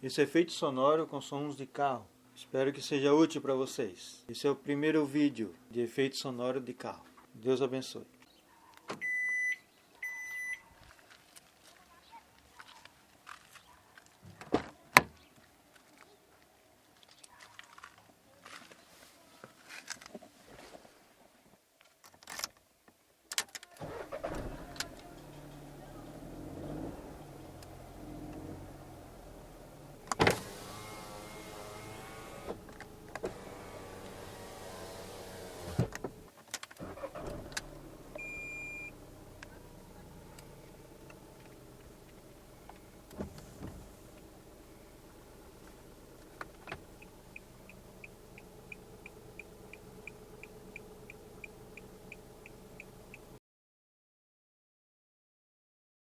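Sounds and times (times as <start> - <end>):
electric window motor whirring: 23.9 - 53.4
turn signal ticking: 23.9 - 53.4.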